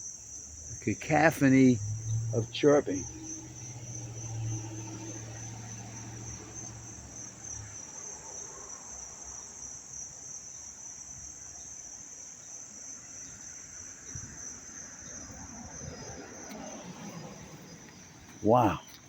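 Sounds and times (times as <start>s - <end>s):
crickets chirping: 0.0s - 19.0s
low hum: 1.4s - 4.6s.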